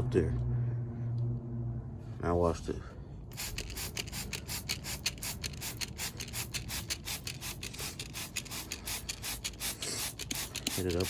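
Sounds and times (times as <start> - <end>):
rhythmic rubbing strokes: 3.4 - 11.0.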